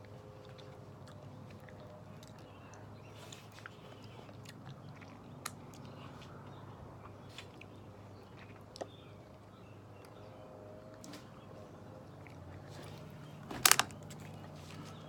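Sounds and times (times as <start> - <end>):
sharp knocks clattering: 13.5 - 14.0.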